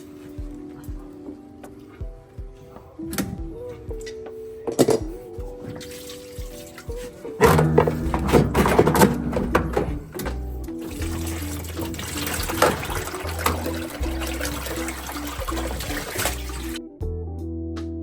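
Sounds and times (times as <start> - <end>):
background music with bass line: 0.0 - 18.0
water gushing and splashing: 5.7 - 16.8.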